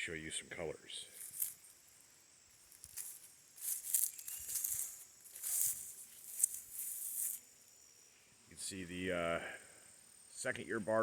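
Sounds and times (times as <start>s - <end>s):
footsteps through dry grass: 1.1s - 1.7s, 2.6s - 7.5s.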